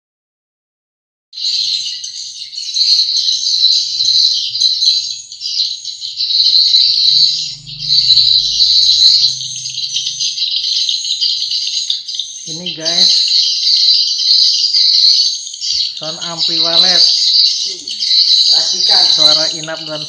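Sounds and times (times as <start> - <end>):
recorded bird chirping through speaker: 1.4 - 20.0
faint low hum: 3.7 - 10.9.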